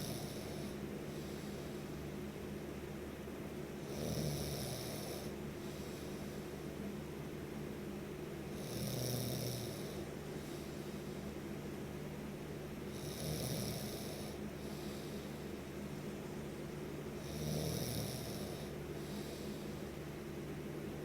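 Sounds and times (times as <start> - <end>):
hissy snore: 0.0 - 0.8, 3.8 - 6.3, 8.6 - 10.7, 12.9 - 15.3, 17.2 - 19.8.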